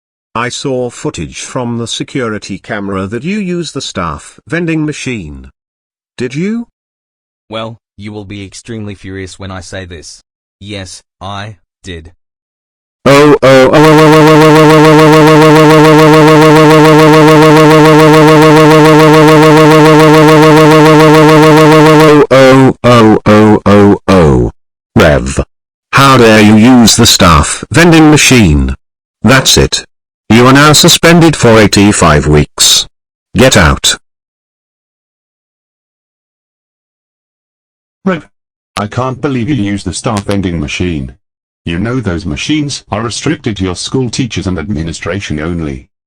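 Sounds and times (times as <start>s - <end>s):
distorted cartoon voice shouting: 13.1s - 25.4s, 26.0s - 28.4s.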